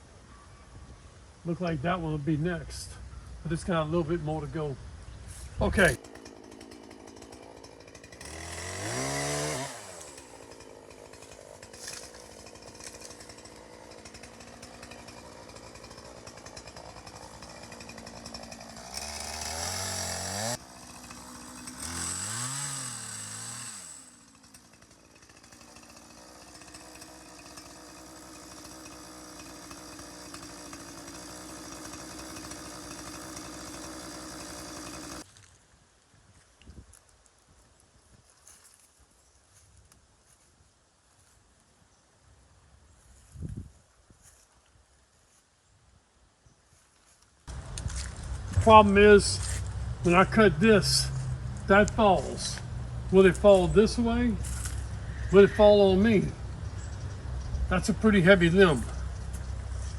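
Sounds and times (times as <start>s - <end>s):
chainsaw idling and revving: 5.4s - 35.3s, 47.5s - 59.9s.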